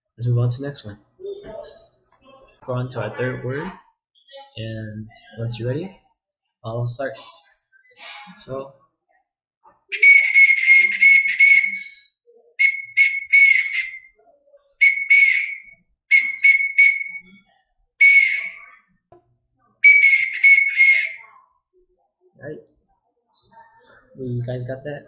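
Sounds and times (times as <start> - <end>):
whistle blasts in morse code: 9.9 - 14.1, 14.8 - 17.4, 18.0 - 18.8, 19.8 - 21.3.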